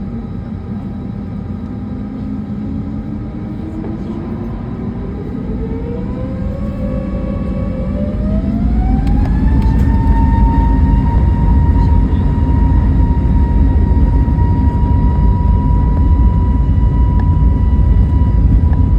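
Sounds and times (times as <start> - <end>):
jet engine low rumble: 0.0 - 18.9
jet engine whine rising: 0.0 - 18.9.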